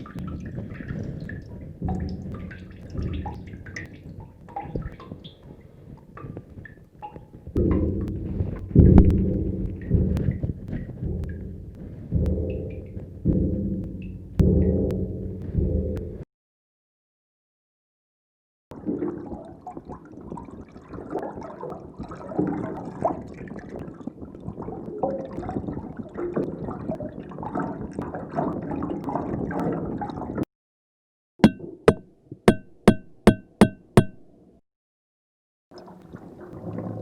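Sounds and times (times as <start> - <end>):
underwater bubbling with clicks: 0.0 - 16.1, 18.7 - 30.4
sharp knocks with ringing tone: 31.4 - 34.3.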